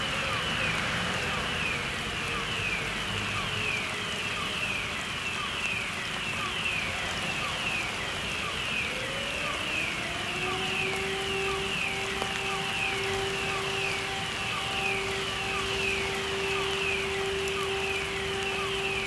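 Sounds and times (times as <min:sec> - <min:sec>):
motor-driven fire siren: 0:00.0 - 0:19.0
fire alarm falling sweep tone: 0:06.6 - 0:19.0.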